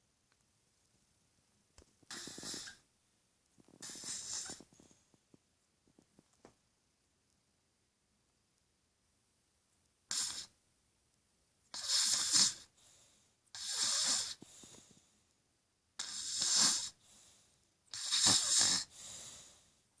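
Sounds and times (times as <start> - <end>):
loud rattling snoring: 2.1 - 2.8, 3.8 - 4.6, 11.8 - 12.7, 13.6 - 14.4, 16.0 - 17.0, 18.0 - 18.9.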